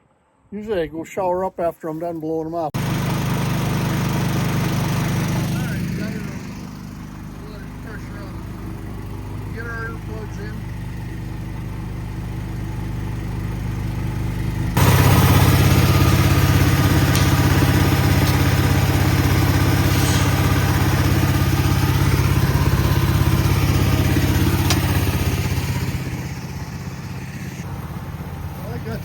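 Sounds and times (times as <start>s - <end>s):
engine running: 2.7s - 29.0s
compressed air blast: 14.8s - 27.6s.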